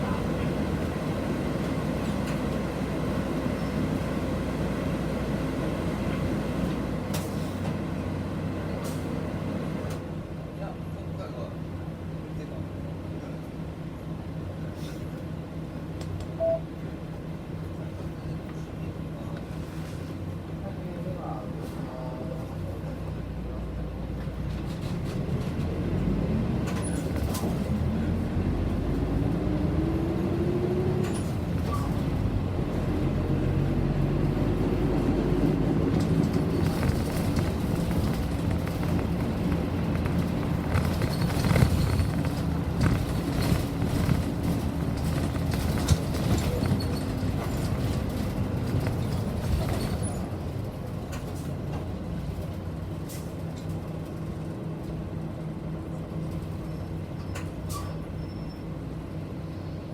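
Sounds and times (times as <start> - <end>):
bus engine: 0.0 - 59.9
bus body knocks and rattles: 24.2 - 28.1, 34.5 - 55.0.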